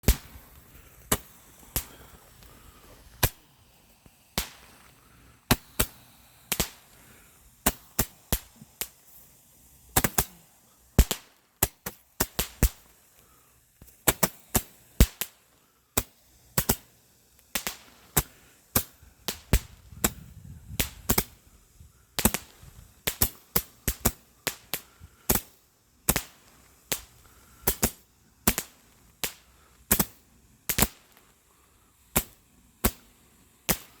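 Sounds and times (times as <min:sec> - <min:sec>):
fireworks bangs with echo: 0:00.0 - 0:00.5, 0:04.3 - 0:04.9, 0:05.5 - 0:06.9, 0:10.0 - 0:10.4, 0:11.0 - 0:12.8.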